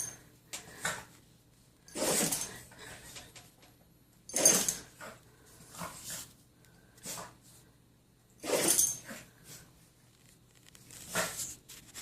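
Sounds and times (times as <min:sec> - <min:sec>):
dog sneezing: 0:01.9 - 0:02.5, 0:08.4 - 0:08.9.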